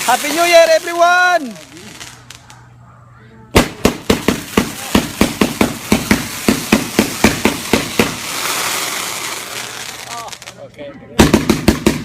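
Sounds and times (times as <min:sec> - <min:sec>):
firecrackers banging: 0:00.0 - 0:02.6, 0:03.5 - 0:10.6, 0:11.2 - 0:12.0.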